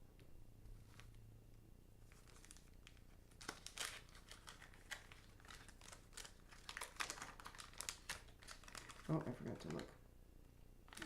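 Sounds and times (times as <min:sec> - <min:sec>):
wax paper wrapper crinkling and tearing: 0:02.0 - 0:10.0.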